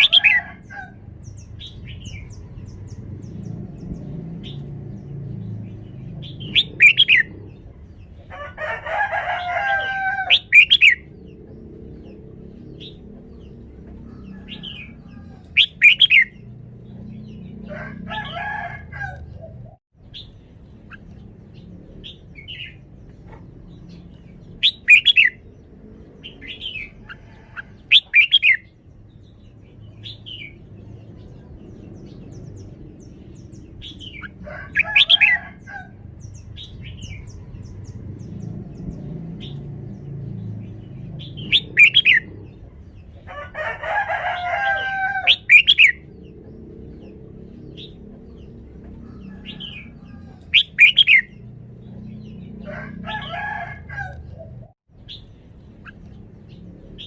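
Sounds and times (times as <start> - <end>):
bulbul singing bright phrases: 0.0 - 7.9, 10.3 - 18.1, 20.0 - 27.1, 27.8 - 35.4, 36.1 - 43.1, 45.3 - 52.6.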